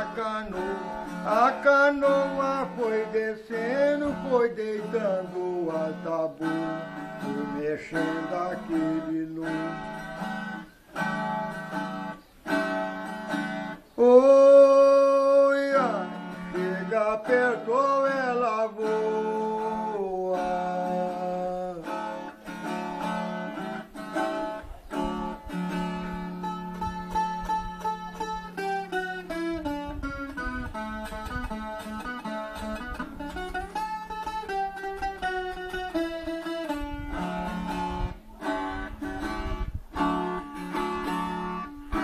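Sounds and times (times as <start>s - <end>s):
acoustic guitar strumming chords: 0.0s - 42.0s.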